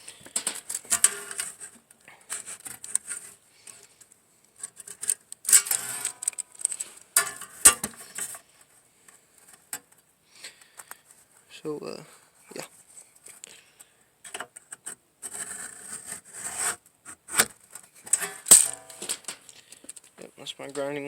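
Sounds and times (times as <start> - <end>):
sheet metal scraping: 0.0 - 3.4, 5.6 - 8.4, 15.3 - 19.4.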